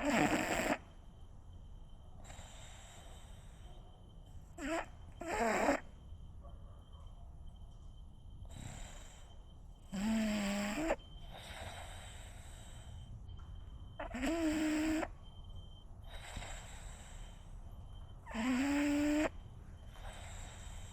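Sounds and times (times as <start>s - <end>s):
dog snoring: 0.0s - 0.9s, 4.6s - 6.0s, 9.8s - 12.8s, 14.0s - 15.2s, 18.2s - 19.3s, 19.9s - 20.9s
faint dog breath: 2.1s - 10.0s, 10.6s - 13.4s, 16.0s - 20.9s.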